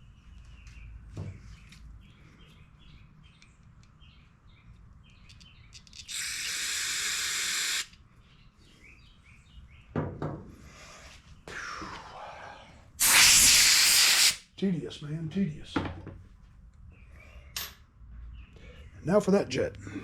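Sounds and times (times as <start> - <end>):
small birds chirping faintly: 0.0 - 13.0
spray hissing: 13.0 - 14.4.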